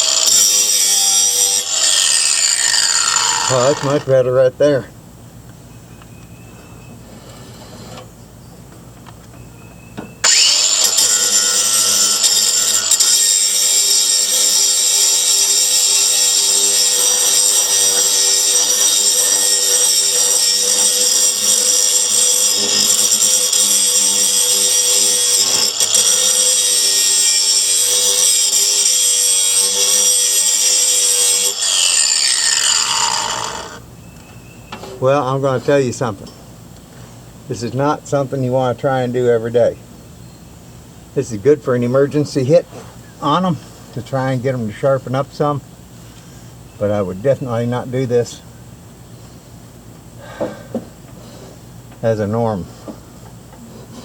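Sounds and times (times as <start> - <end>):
angle grinder grinding steel: 0.0 - 4.2, 10.2 - 33.8.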